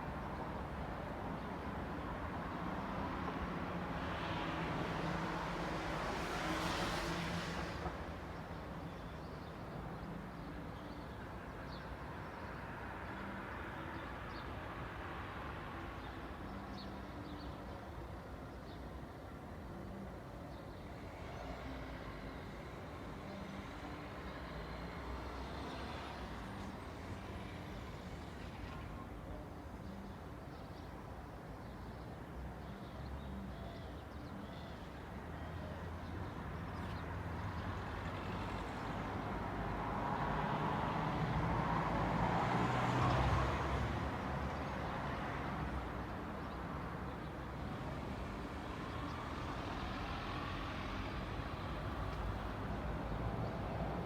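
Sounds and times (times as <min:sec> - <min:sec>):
street traffic hum: 0:00.0 - 0:54.0.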